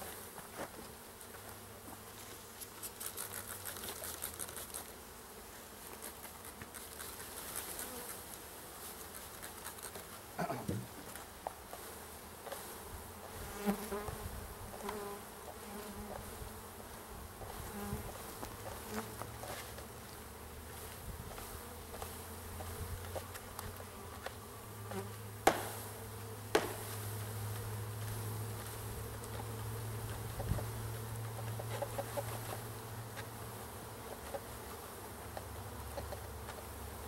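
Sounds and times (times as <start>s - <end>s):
bees buzzing: 4.6s - 37.0s
sharp knocks: 25.4s - 25.7s, 26.5s - 26.8s.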